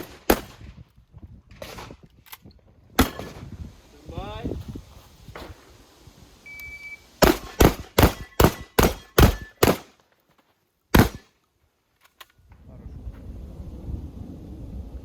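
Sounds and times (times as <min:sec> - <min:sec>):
shotgun firing rapidly: 0:03.0 - 0:03.4, 0:07.2 - 0:09.9, 0:11.0 - 0:11.2
short high beep: 0:06.5 - 0:07.1.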